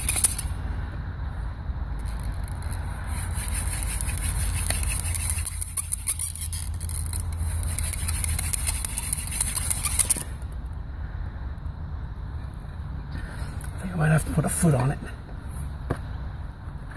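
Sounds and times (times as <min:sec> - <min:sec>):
hand drill spindle scraping wood: 0:00.0 - 0:00.5, 0:02.0 - 0:10.4.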